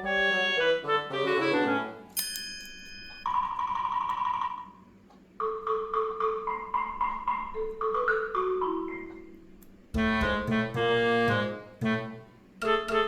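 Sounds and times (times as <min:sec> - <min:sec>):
chime ringing: 0:02.2 - 0:04.2
light mallet percussion tune: 0:05.4 - 0:10.6.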